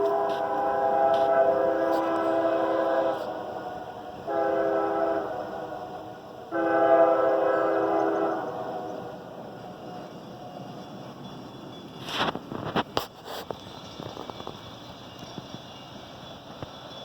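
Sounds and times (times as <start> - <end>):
locomotive air horn blasts: 0.0 - 9.2.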